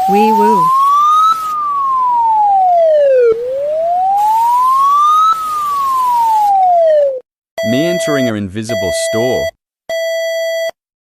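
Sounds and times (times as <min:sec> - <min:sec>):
wailing siren: 0:00.0 - 0:08.2.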